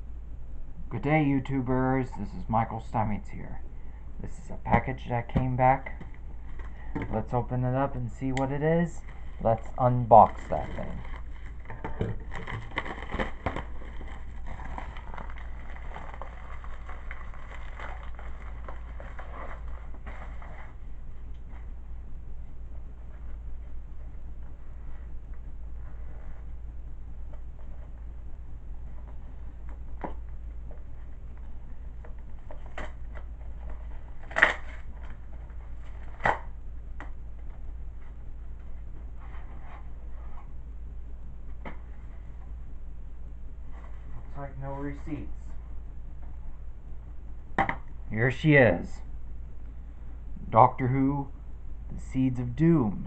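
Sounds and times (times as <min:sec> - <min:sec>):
steady low hum: 0:00.0 - 0:53.0
packaging rustling and crinkling: 0:09.0 - 0:20.8.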